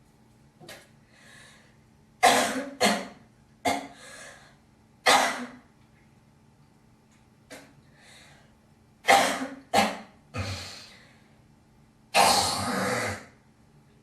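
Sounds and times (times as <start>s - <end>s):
woman coughing: 2.2s - 4.0s, 5.1s - 5.6s, 9.1s - 10.1s.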